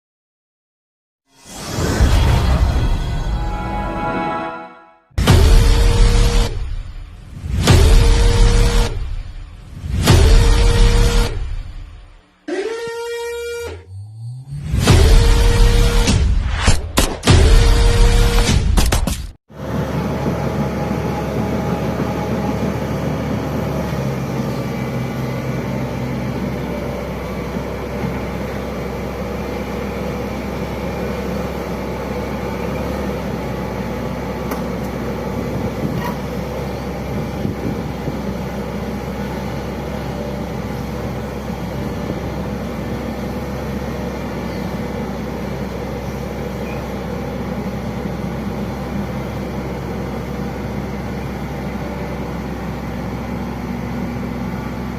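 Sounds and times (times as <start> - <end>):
excavator diesel engine running: 19.5 - 54.9.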